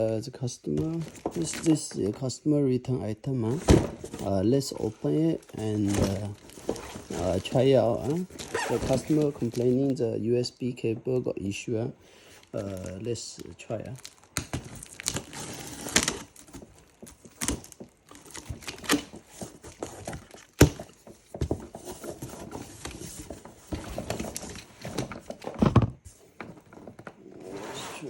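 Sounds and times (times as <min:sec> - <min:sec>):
rustling: 0:03.4 - 0:10.2, 0:12.2 - 0:28.0
suitcase knocks and clicks: 0:03.5 - 0:04.5, 0:14.4 - 0:22.0.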